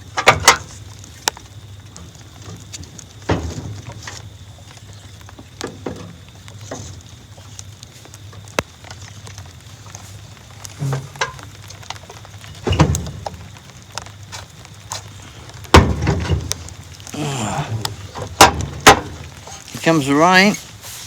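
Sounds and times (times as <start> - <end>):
burning wood popping: 0.0 - 21.0
wood fire crackling: 0.0 - 21.0
loud knocks: 15.7 - 16.7, 17.6 - 19.4.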